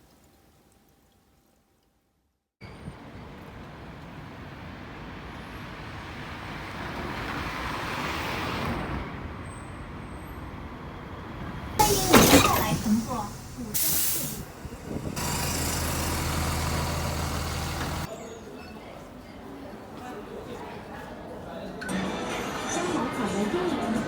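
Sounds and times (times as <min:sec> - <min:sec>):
vehicle rumble: 0:02.8 - 0:18.1
sudden loud burst: 0:11.8 - 0:16.9.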